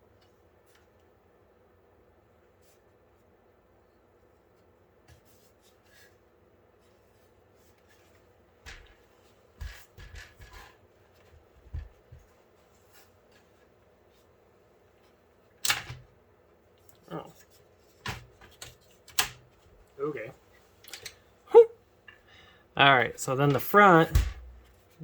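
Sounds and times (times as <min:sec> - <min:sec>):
computer case knocks and clunks: 0:24.1 - 0:24.7.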